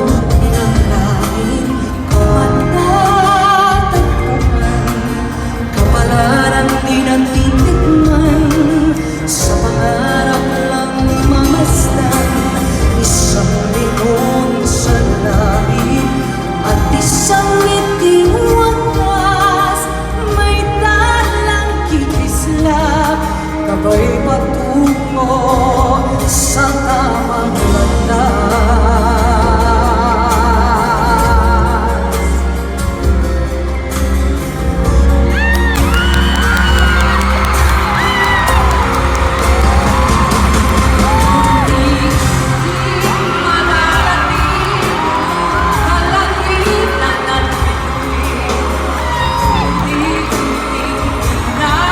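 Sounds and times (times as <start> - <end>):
woman singing with vibrato: 0.0 - 32.7, 35.5 - 51.9
pop band with heavy bass: 0.0 - 51.9
audience whooping: 35.3 - 51.9.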